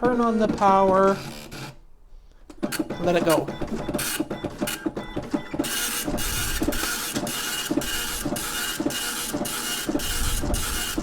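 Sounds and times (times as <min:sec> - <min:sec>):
dot matrix print head buzzing: 0:02.6 - 0:11.0.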